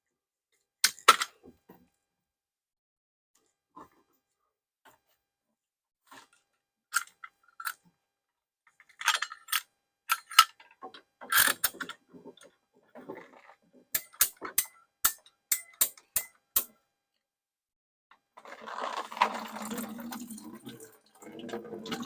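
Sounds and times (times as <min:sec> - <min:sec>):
hand tool clicking on metal pipe: 0:13.9 - 0:16.7.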